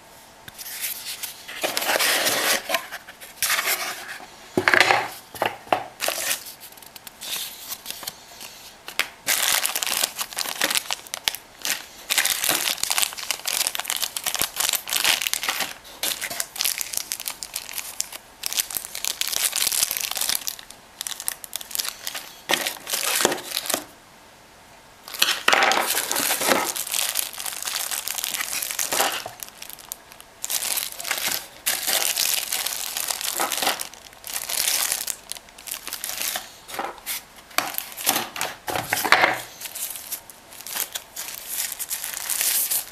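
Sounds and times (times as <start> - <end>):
crinkling and rustling: 0.6 - 23.9, 25.1 - 42.9.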